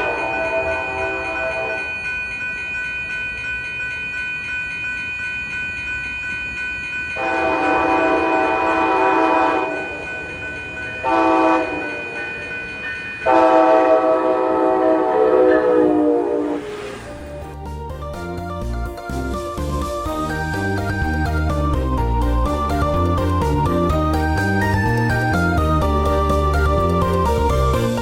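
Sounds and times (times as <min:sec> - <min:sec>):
locomotive air horn chord: 0:00.0 - 0:01.8, 0:07.2 - 0:10.0, 0:11.0 - 0:12.1, 0:13.3 - 0:16.9.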